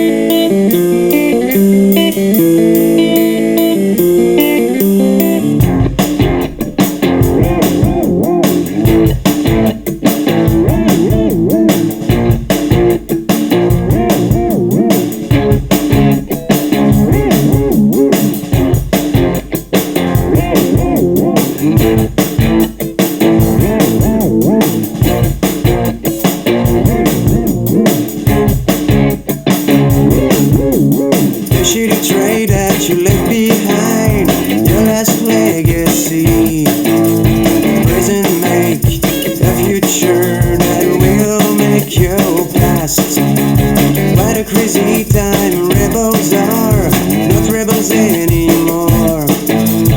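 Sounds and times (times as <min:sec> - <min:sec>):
electric guitar: 0:00.0 - 0:49.9
steady drum beat: 0:00.0 - 0:49.9
low bass line: 0:05.4 - 0:09.8, 0:23.2 - 0:49.9.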